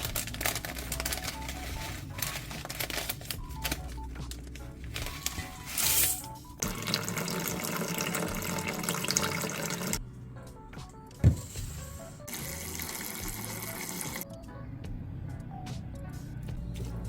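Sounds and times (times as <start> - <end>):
background music: 0.0 - 17.0
kitchen tap water running: 6.6 - 10.0, 12.3 - 14.2.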